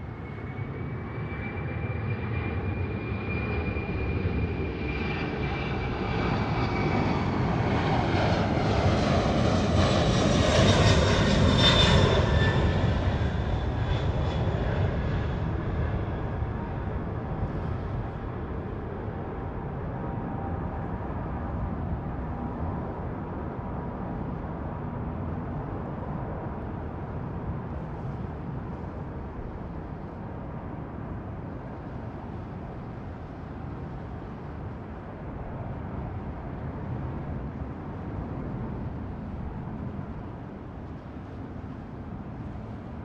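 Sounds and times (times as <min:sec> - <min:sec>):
jet engines rumbling: 0:00.0 - 0:21.2.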